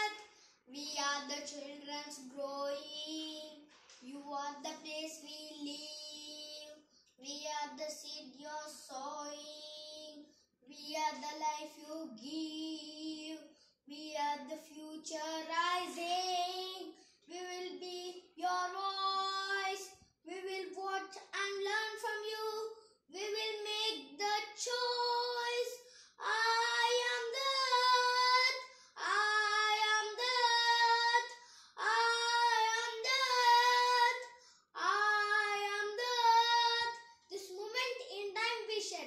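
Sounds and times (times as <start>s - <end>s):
child singing: 0.0s - 39.0s
child breathing: 0.2s - 0.7s, 25.8s - 26.2s, 28.6s - 29.0s, 31.3s - 31.8s, 34.3s - 34.8s.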